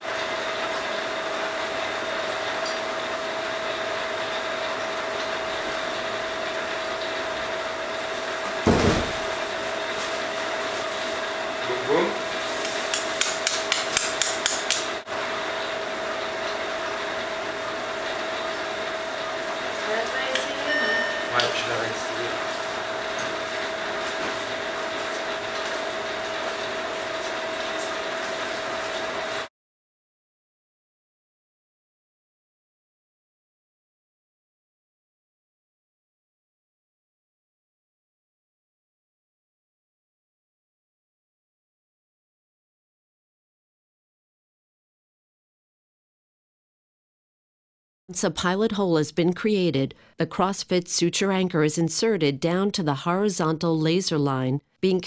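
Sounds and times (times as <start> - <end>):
equipment hum with tone: 0.0 - 29.5
mallet heavy knock: 8.7 - 9.3.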